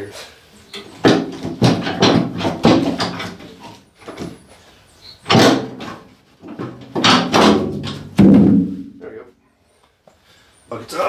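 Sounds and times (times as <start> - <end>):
metal scraping and clunking: 0.8 - 4.4, 5.2 - 9.0
loud metal clank: 7.0 - 9.0.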